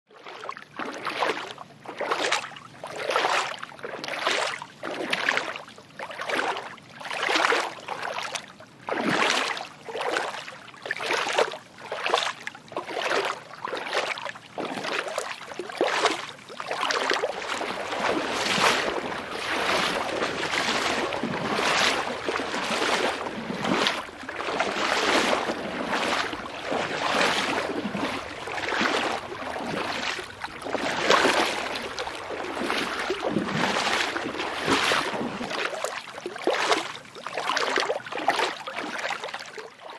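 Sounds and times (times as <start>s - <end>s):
scuffing footsteps: 17.4s - 35.6s.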